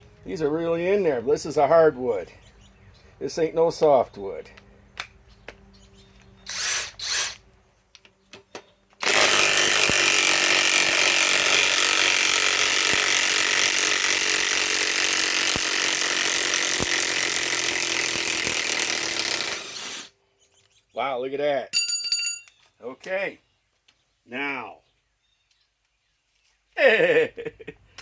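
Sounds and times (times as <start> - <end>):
impact wrench hammering: 9.0 - 20.1.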